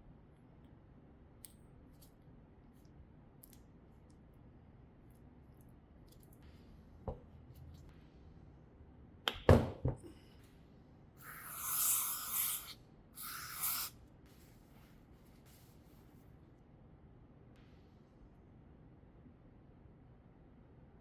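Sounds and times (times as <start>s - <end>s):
aerosol can spraying: 11.2s - 13.9s.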